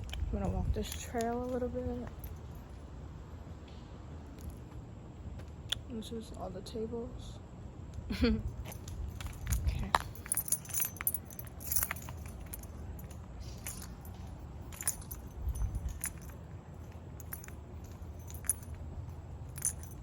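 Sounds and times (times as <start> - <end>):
low wind rumble: 0.0 - 6.0, 7.0 - 20.0
keys jangling: 8.5 - 20.0.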